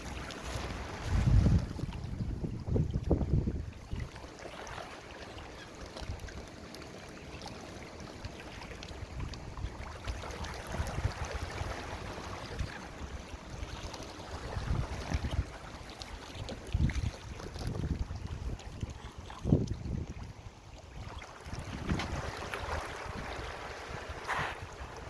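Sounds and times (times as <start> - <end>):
wind buffeting microphone: 0.0 - 4.2, 9.0 - 25.0
lake water washing: 0.0 - 25.0.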